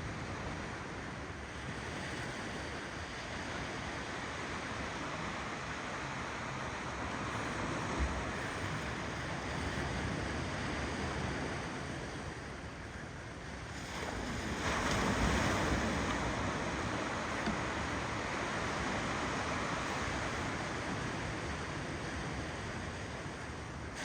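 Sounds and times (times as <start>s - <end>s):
ocean waves on shore: 0.0s - 24.0s.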